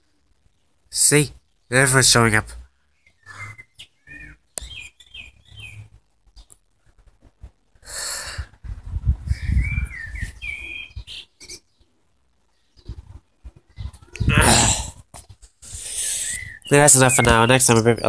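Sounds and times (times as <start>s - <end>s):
birds calling: 0.6s - 7.0s, 9.2s - 15.0s, 15.6s - 18.0s.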